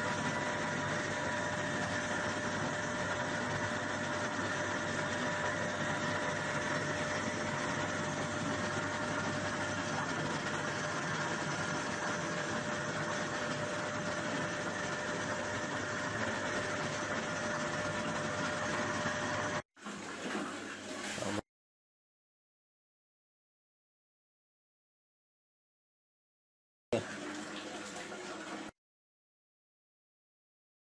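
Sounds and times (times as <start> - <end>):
washing machine motor drone and whine: 0.0 - 21.4, 27.0 - 28.7.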